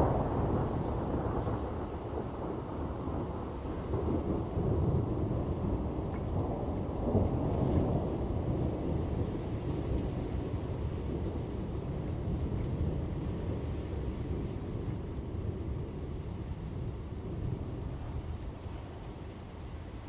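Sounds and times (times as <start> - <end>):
thunder rumbling: 0.0 - 19.7
rain falling: 0.0 - 20.0.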